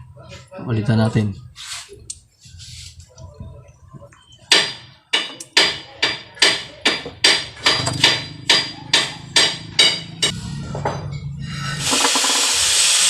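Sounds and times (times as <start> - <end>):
hammer striking metal: 4.5 - 12.5.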